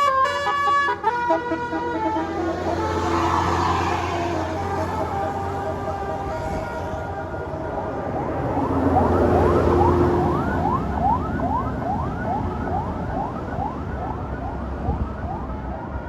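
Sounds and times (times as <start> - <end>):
bus horn rising whoops: 0.0 - 8.6
bus engine rumble: 0.0 - 16.0.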